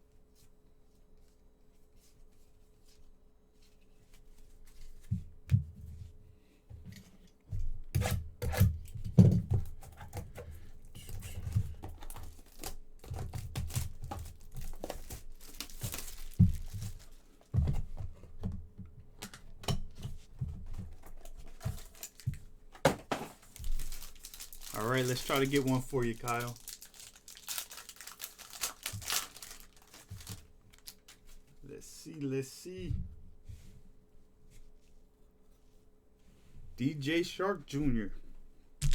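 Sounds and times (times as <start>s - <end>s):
cards handled knocks and rustles: 6.8s - 31.6s
wrappers crinkling: 12.0s - 17.3s, 21.2s - 22.4s, 23.1s - 31.6s
card packs tearing open: 12.1s - 17.1s, 21.6s - 22.4s, 23.1s - 31.2s.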